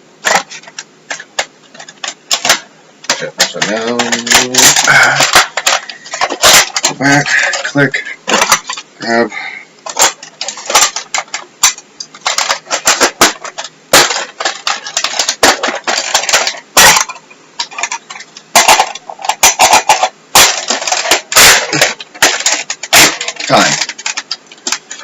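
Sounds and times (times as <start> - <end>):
plastic parts snapping: 0.2 - 8.8, 9.8 - 25.0
plastic parts clicking and rattling: 0.2 - 9.2, 9.8 - 25.0.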